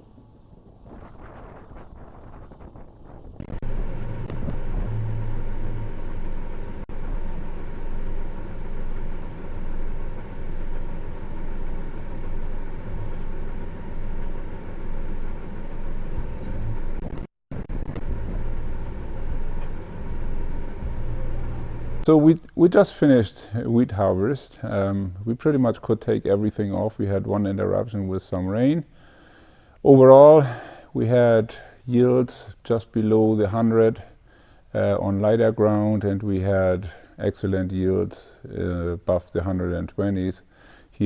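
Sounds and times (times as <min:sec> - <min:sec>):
low hum: 0:00.0 - 0:41.0
diesel engine running: 0:03.0 - 0:22.1.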